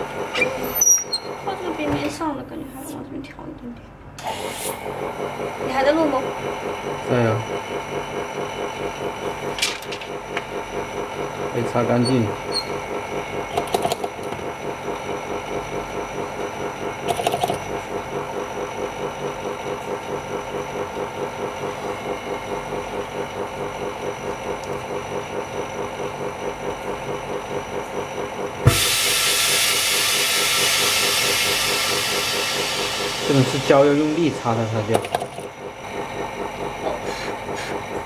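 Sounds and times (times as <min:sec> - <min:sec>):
pump motor pulsing: 0:00.0 - 0:02.5, 0:04.2 - 0:38.0
air hissing: 0:04.2 - 0:04.8, 0:28.6 - 0:34.4.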